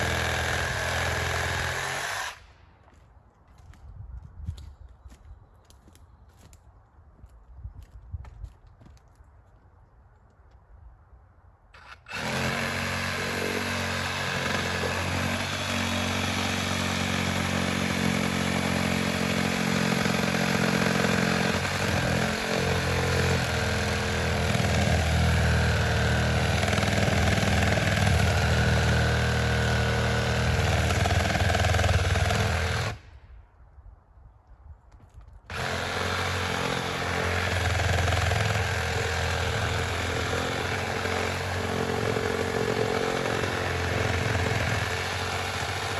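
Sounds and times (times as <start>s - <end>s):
chainsaw running: 0.0s - 2.4s, 11.8s - 33.0s, 35.5s - 45.9s.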